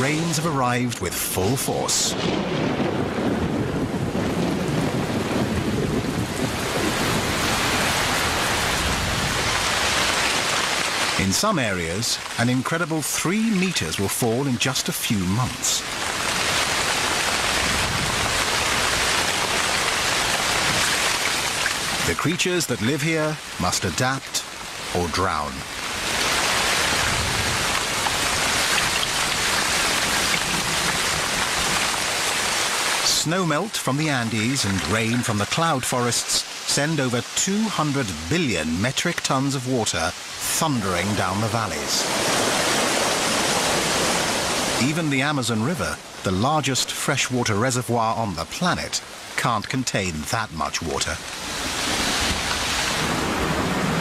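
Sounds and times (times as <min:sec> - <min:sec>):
heavy rain downpour: 0:00.0 - 0:54.0
thunder rumbling: 0:02.1 - 0:09.7.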